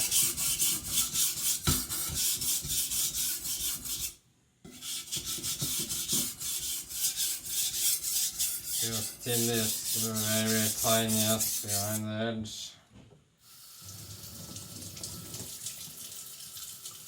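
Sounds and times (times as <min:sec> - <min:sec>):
blade scraping on whetstone: 0:00.0 - 0:12.0.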